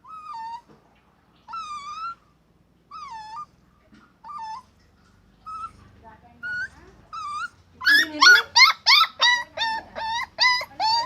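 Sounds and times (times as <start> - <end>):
dog whining: 0.0 - 0.7, 1.4 - 2.3, 2.9 - 3.6, 4.2 - 4.7, 5.4 - 5.8, 6.4 - 11.0.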